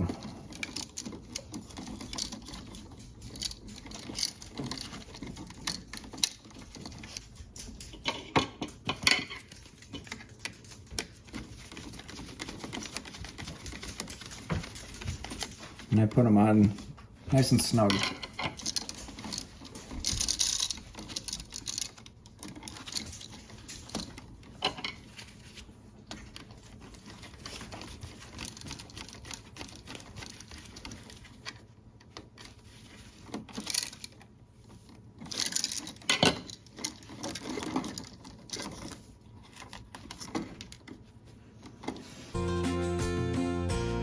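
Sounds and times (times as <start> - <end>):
clicks taps and scrapes of hand work: 0.0 - 42.4.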